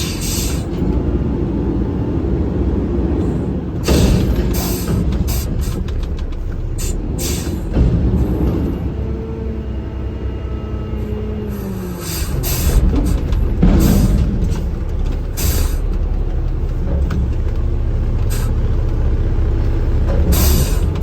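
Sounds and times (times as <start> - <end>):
truck engine rumble: 0.0 - 21.0.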